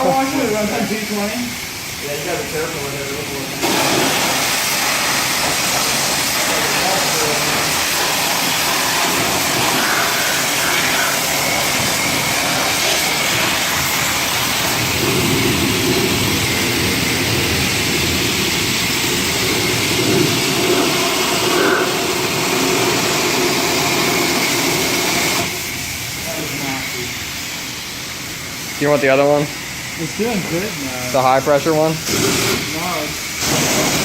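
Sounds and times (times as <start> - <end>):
pressure washer spraying: 0.0 - 34.0.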